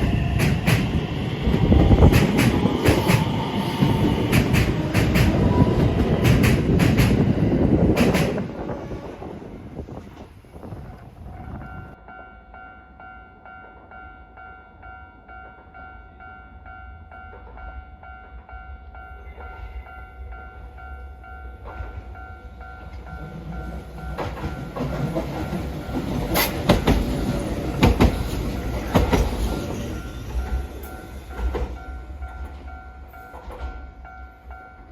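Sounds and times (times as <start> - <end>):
train wheels knocking over rail joints: 0.0 - 8.6, 24.1 - 31.8
train passing: 0.0 - 34.9.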